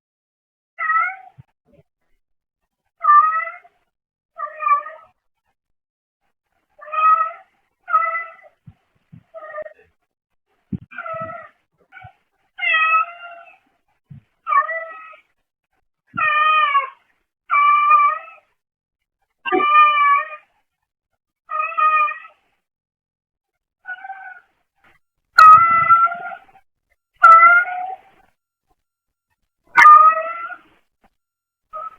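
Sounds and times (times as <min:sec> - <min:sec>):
cat meowing: 0:10.9 - 0:13.5, 0:16.2 - 0:18.4, 0:19.5 - 0:20.4, 0:21.5 - 0:22.4, 0:23.8 - 0:24.5, 0:25.4 - 0:26.5, 0:27.2 - 0:28.1, 0:29.8 - 0:30.7.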